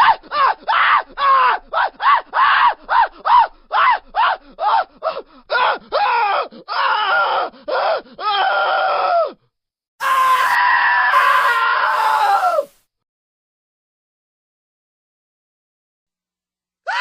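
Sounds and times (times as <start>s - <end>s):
person screaming: 5.6s - 9.4s, 10.0s - 12.8s.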